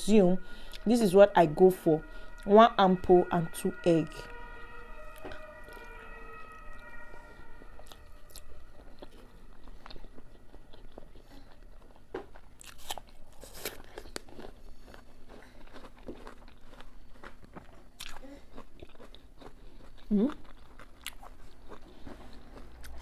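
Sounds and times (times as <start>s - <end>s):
biting and chewing an apple: 7.8s - 23.0s.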